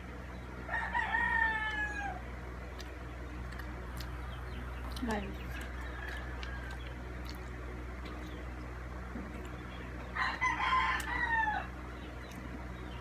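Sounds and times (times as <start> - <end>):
steady low hum: 0.0 - 13.0
rooster crowing: 0.7 - 2.2, 5.8 - 6.9, 10.2 - 11.8.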